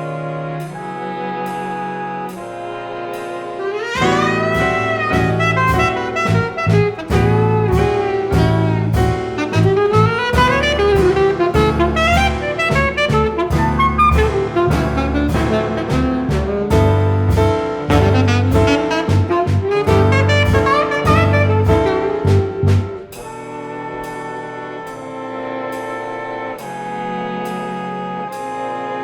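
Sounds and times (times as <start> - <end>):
alto saxophone line: 0.0 - 29.0
bass and drums: 4.0 - 23.4.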